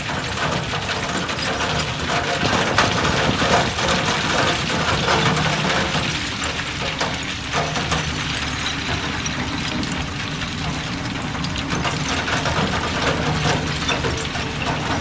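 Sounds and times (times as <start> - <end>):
clatter of tracks and metal: 0.0 - 15.0.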